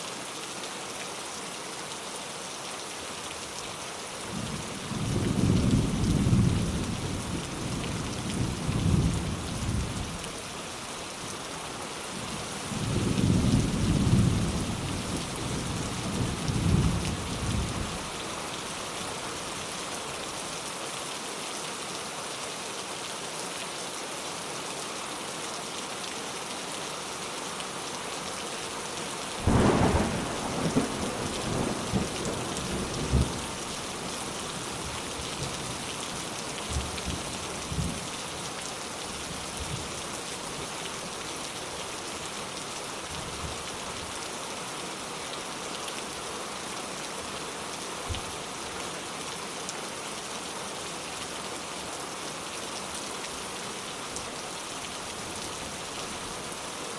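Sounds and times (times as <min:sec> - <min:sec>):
steady rain: 0:00.0 - 0:56.9.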